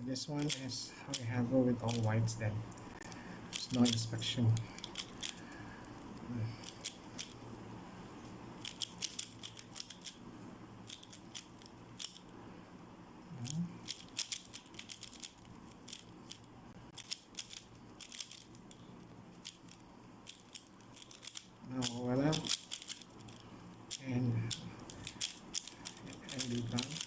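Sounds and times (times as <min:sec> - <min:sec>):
speed cube clicking: 0:00.4 - 0:02.1, 0:03.0 - 0:05.5, 0:06.6 - 0:07.4, 0:08.6 - 0:10.2, 0:10.9 - 0:12.2, 0:13.5 - 0:18.8, 0:19.4 - 0:27.0
short low vocal sound: 0:13.3 - 0:13.8.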